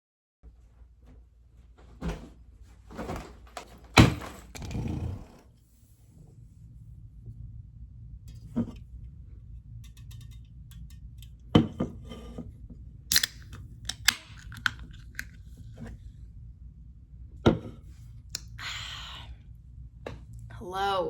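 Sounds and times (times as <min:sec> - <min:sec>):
steady low hum: 0:04.5 - 0:20.7.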